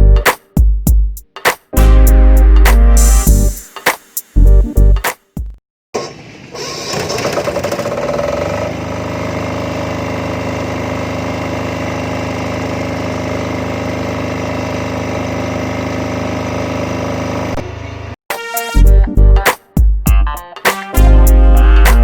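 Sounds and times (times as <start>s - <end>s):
diesel generator starting up: 6.0s - 18.1s.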